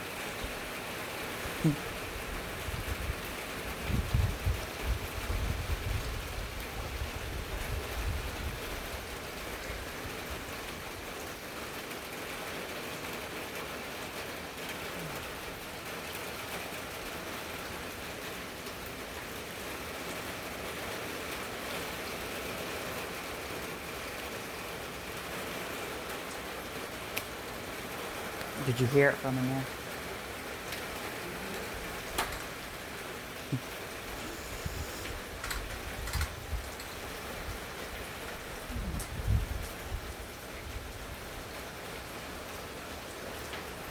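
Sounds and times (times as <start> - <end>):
heavy rain spattering: 0.0 - 43.9
wind rumbling on microphone: 1.5 - 10.6, 33.5 - 41.5.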